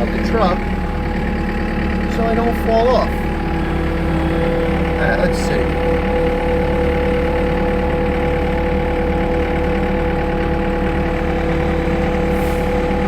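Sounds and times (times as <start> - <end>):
skid steer engine running: 0.0 - 13.0
steady whine: 0.0 - 13.0.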